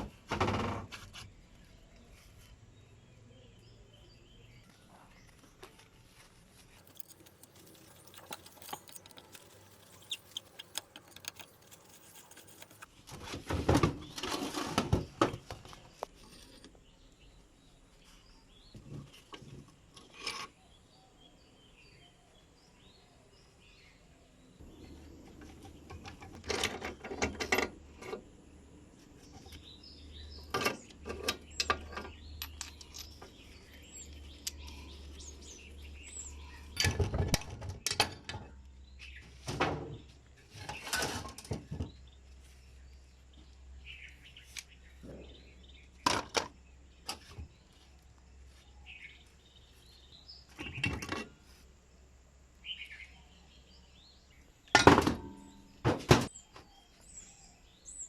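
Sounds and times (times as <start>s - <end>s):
birds chirping: 1.3s - 12.9s, 13.8s - 58.0s
metal tools clinking: 6.7s - 12.9s.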